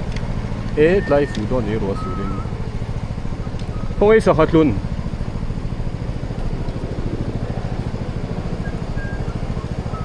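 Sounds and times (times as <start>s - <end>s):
small engine running: 0.0s - 10.0s.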